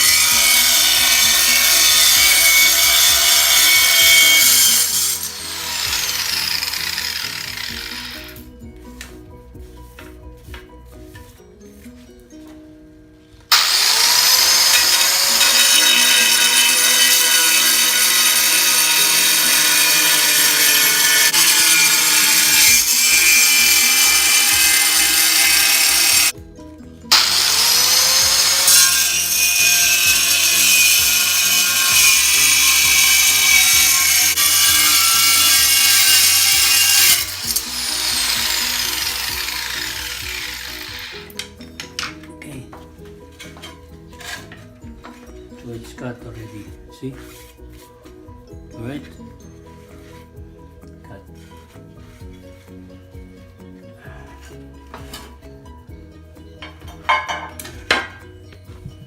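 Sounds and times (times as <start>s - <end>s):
angle grinder cutting tile: 0.0s - 8.4s, 13.5s - 26.4s, 27.1s - 42.2s, 43.4s - 44.6s.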